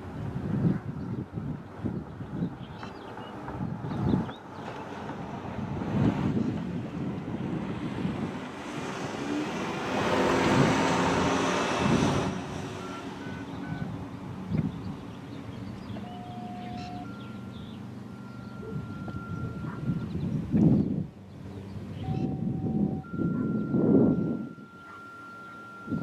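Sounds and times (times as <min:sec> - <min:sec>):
vehicle passing: 0:02.4 - 0:26.0
faint electronic beeps: 0:16.0 - 0:20.2, 0:21.6 - 0:26.0.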